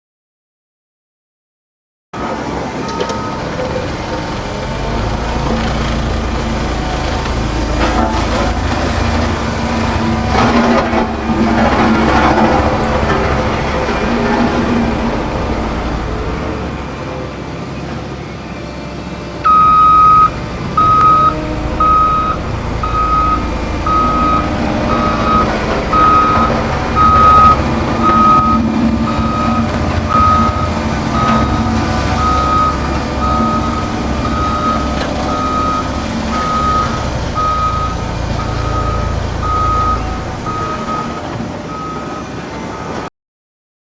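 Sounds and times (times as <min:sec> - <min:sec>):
road roller engine rumbling: 0:02.2 - 0:43.1
reversing alarm beeps: 0:02.8 - 0:03.7, 0:19.4 - 0:43.0.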